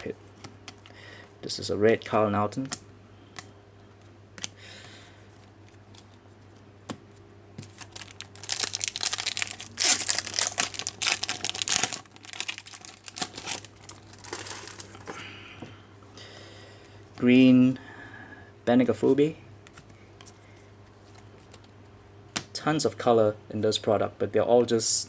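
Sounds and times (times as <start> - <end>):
wrapper crinkling and tearing: 7.6 - 15.1.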